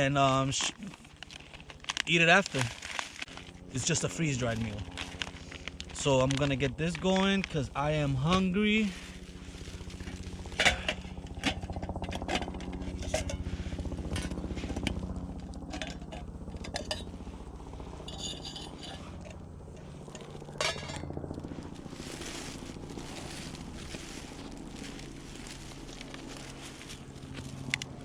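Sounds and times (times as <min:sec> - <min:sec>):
steady low rumble: 0:00.0 - 0:28.0
metal cookware clinking: 0:18.1 - 0:19.3.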